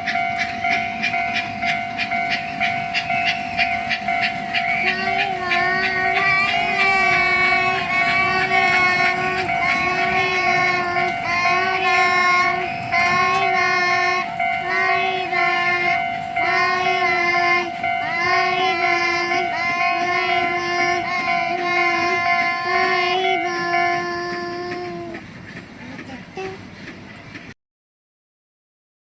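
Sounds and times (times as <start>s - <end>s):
steady held tone: 0.0s - 25.2s
person singing: 4.0s - 25.2s.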